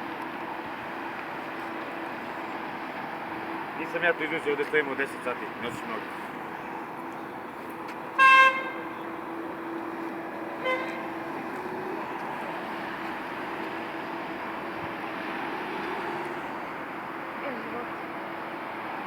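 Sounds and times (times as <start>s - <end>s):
traffic noise from passing cars: 0.0s - 19.0s
vehicle horn toot: 8.2s - 9.0s, 10.6s - 11.2s.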